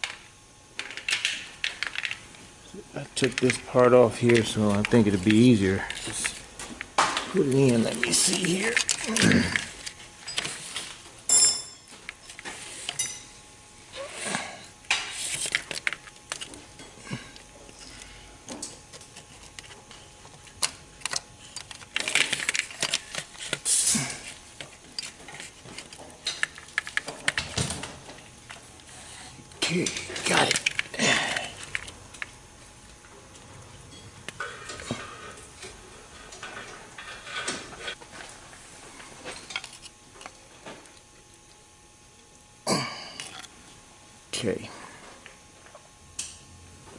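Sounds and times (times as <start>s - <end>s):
metal tools clinking and knocking: 11.3s - 13.3s.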